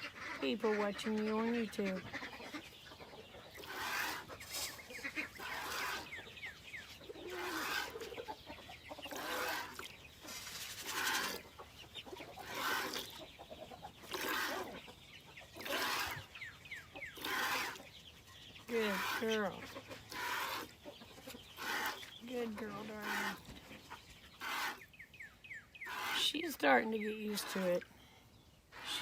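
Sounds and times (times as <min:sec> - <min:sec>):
milk squirting into bucket: 0:03.6 - 0:04.6, 0:05.4 - 0:06.1, 0:09.1 - 0:11.5, 0:12.4 - 0:13.2, 0:14.0 - 0:14.8, 0:15.6 - 0:16.3, 0:17.2 - 0:17.9, 0:20.0 - 0:20.7, 0:21.6 - 0:22.1, 0:25.9 - 0:26.6.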